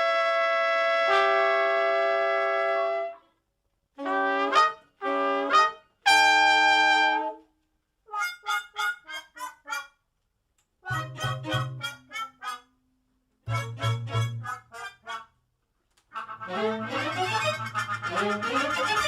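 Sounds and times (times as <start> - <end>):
solo trumpet: 0.0 - 3.4, 4.0 - 7.5, 10.8 - 12.7, 13.4 - 15.3, 16.1 - 19.0.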